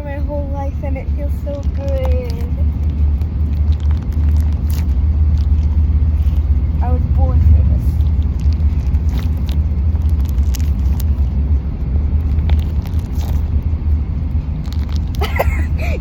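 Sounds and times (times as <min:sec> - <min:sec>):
car cabin rumble: 0:00.0 - 0:16.0
faint clicks and rustles: 0:00.9 - 0:06.8, 0:07.5 - 0:15.6.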